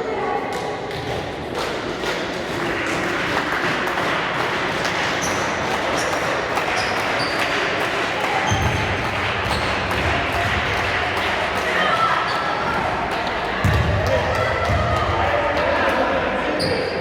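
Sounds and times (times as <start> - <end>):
hubbub of players and spectators: 0.0 - 17.0
basketball bouncing on court: 8.4 - 10.8, 13.6 - 15.2.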